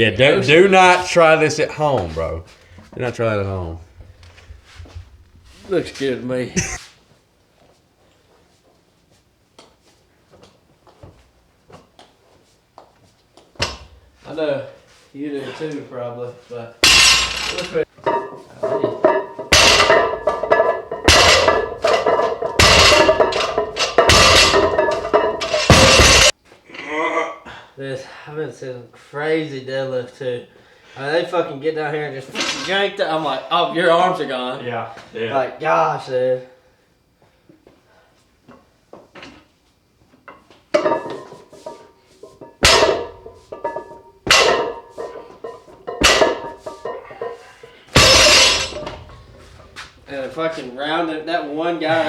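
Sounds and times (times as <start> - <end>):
barbell plates clanging on floor: 16.8 - 26.3, 40.7 - 50.5.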